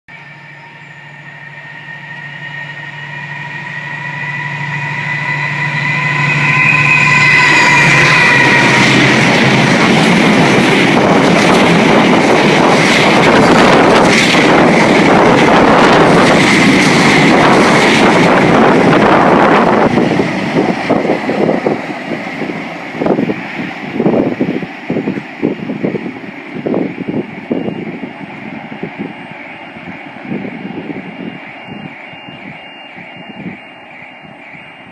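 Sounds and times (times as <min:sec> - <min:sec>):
locomotive engine hum: 0:00.1 - 0:34.9
train wagons rumbling: 0:05.0 - 0:34.9
rail clicking: 0:07.5 - 0:27.6.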